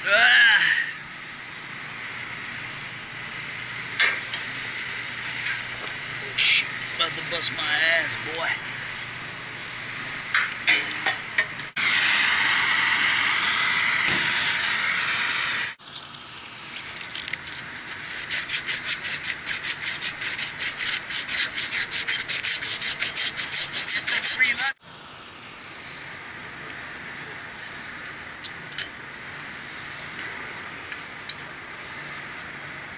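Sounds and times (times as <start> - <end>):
steady hiss: 0.6 - 32.9
brisk scrubbing by hand: 17.8 - 24.7.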